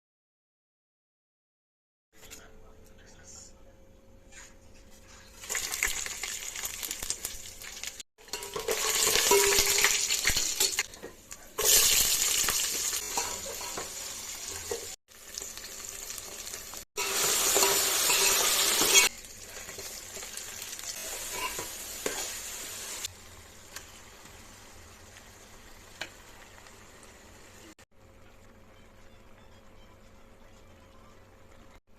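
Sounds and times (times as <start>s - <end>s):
food sizzling in hot oil: 5.4s - 11.0s, 11.6s - 27.8s.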